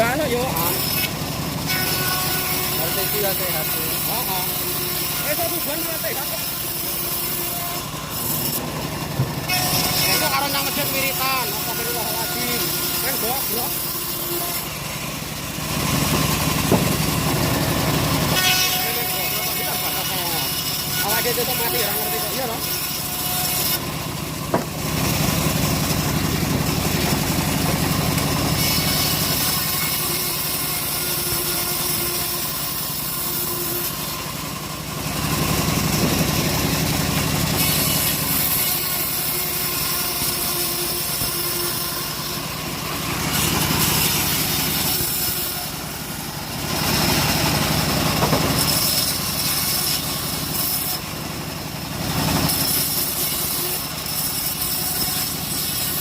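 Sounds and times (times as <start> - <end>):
saw blade cutting wood: 0.0 - 56.0
sawmill engine running: 0.0 - 56.0.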